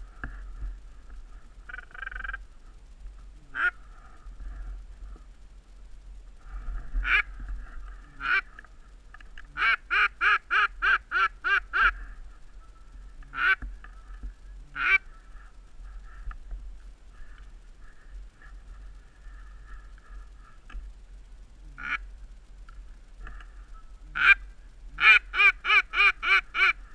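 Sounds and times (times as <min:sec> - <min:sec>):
duck quacking: 0:03.5 - 0:03.8, 0:07.0 - 0:08.6, 0:09.5 - 0:16.3, 0:21.7 - 0:22.1, 0:24.1 - 0:26.8.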